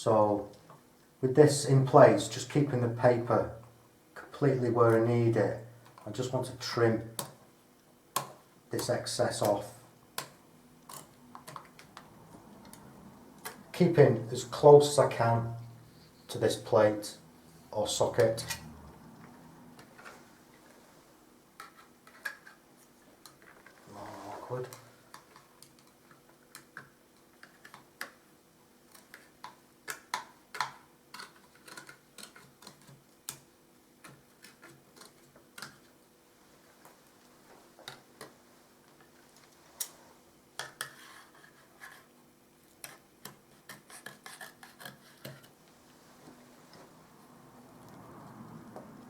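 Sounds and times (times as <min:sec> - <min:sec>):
spatula and blade clicking on wallpaper: 0:28.8 - 0:36.0, 0:40.6 - 0:45.6.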